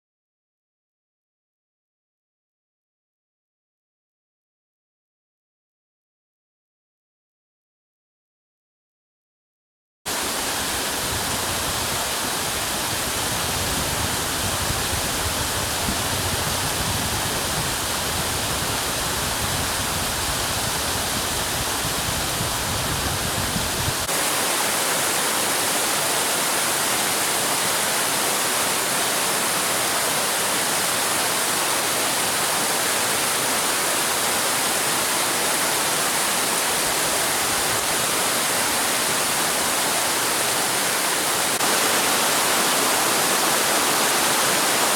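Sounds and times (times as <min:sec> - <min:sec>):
waterfall rushing hiss: 0:10.1 - 0:44.9.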